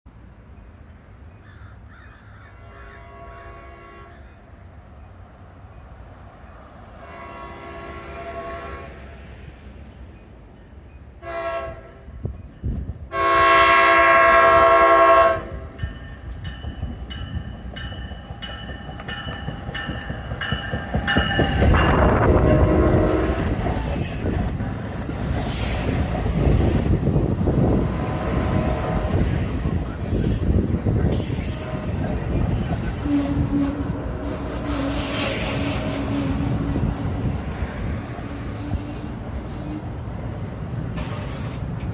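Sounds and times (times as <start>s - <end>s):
train horn blasts: 2.6s - 4.2s, 6.8s - 9.3s, 11.2s - 12.3s, 13.1s - 15.8s, 21.0s - 40.1s
train rolling rumble: 4.8s - 41.9s
wheels and brakes squealing: 16.2s - 26.9s, 27.5s - 41.9s.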